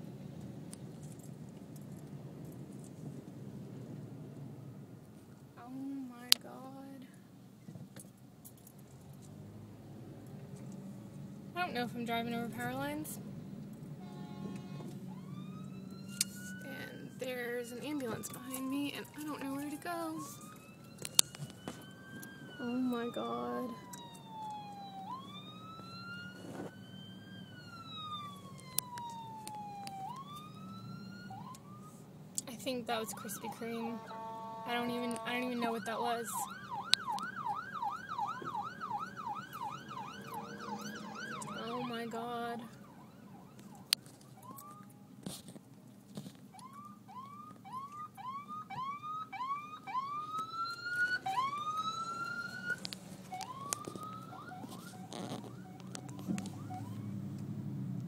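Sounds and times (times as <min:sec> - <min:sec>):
ambulance siren wailing: 0:14.0 - 0:45.2, 0:46.5 - 0:57.4.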